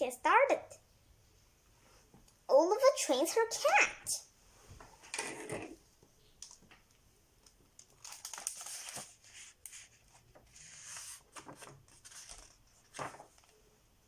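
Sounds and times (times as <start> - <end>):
book pages rustling: 7.8 - 13.6.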